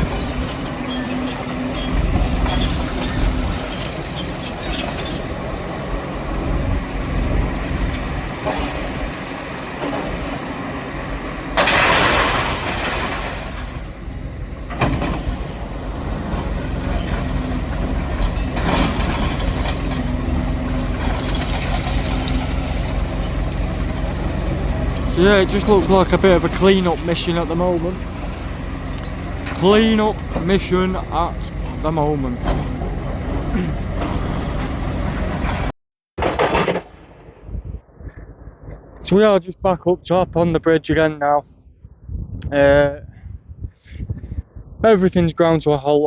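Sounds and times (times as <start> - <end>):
excavator diesel engine running: 0.0 - 35.8
wind buffeting microphone: 37.3 - 45.7.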